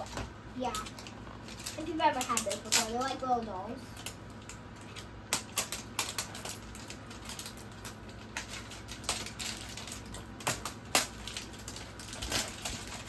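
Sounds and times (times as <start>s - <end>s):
plastic packaging crinkling: 4.0s - 13.0s.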